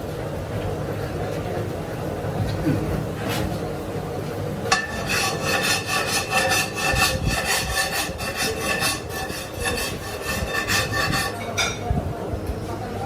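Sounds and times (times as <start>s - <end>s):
filing metal wheel rim: 4.7s - 11.5s.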